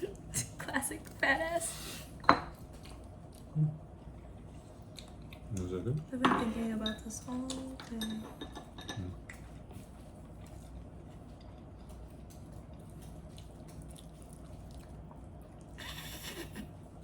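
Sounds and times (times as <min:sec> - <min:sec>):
low steady hum: 0:00.0 - 0:17.0
person chewing noodles: 0:02.6 - 0:05.7, 0:10.2 - 0:15.8.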